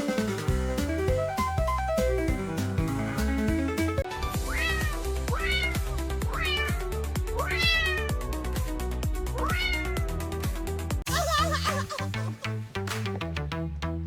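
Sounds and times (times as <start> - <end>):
background music with beat: 0.0 - 14.0
cat meowing: 4.5 - 6.8, 7.4 - 8.1, 9.4 - 10.1.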